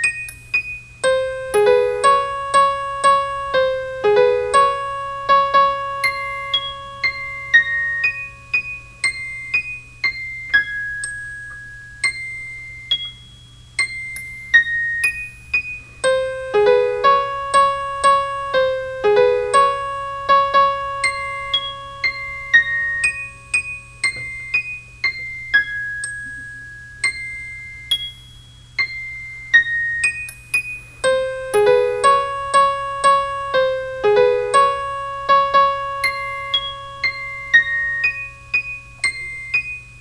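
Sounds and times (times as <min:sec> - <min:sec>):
electric piano melody: 0:01.0 - 0:09.5, 0:16.0 - 0:24.4, 0:31.0 - 0:39.6.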